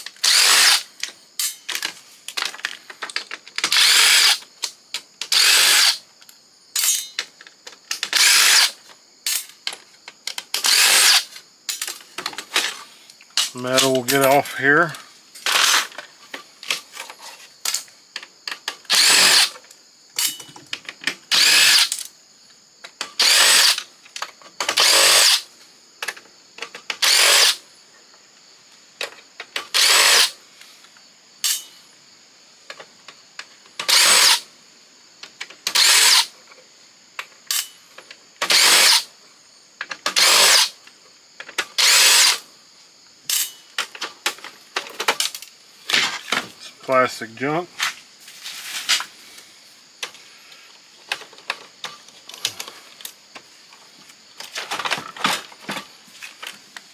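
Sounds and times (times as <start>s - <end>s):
screws and parts clicking: 0.1s - 1.9s, 2.6s - 4.4s, 5.2s - 6.0s, 7.9s - 9.6s, 10.6s - 12.4s, 18.9s - 19.6s, 21.3s - 22.0s, 23.2s - 23.8s, 24.7s - 25.4s, 27.0s - 27.6s, 29.7s - 30.4s, 33.8s - 34.4s, 35.7s - 36.3s, 38.4s - 39.1s, 40.1s - 40.8s, 41.6s - 42.4s
power drill running: 0.2s - 0.8s, 5.4s - 5.9s, 18.9s - 19.4s, 21.3s - 21.8s, 23.2s - 23.8s, 29.8s - 30.2s, 41.8s - 42.3s.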